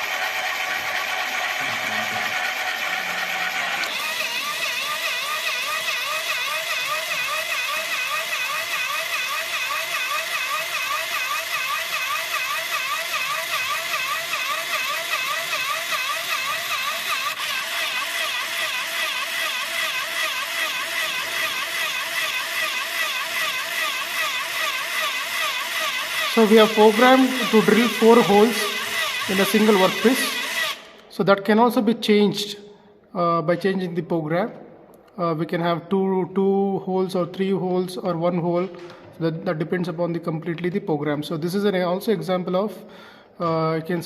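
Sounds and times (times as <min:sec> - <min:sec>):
small electric motor whine: 0:00.0 - 0:31.0.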